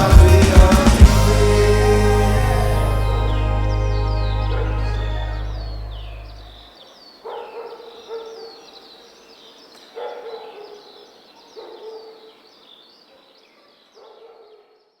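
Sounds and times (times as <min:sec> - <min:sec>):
birds chirping: 0:00.0 - 0:13.5
low animal call: 0:01.3 - 0:06.7.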